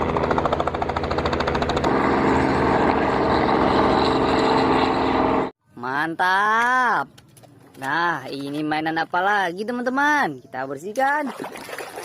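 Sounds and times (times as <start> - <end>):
helicopter rotor chop and engine drone: 0.0 - 5.6.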